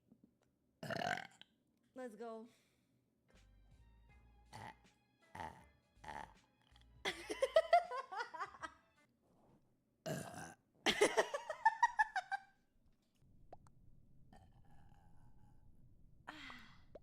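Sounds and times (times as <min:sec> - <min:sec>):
person burping: 0:00.8 - 0:01.5, 0:04.5 - 0:06.3, 0:10.0 - 0:10.6.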